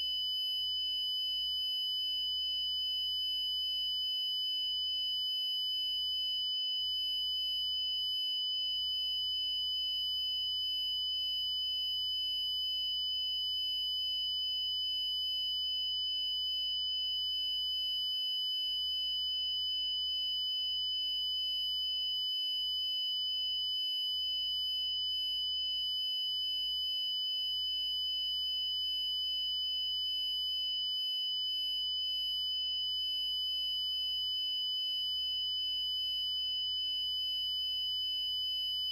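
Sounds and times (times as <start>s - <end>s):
high-pitched electronic sine tone: 0.0s - 1.0s.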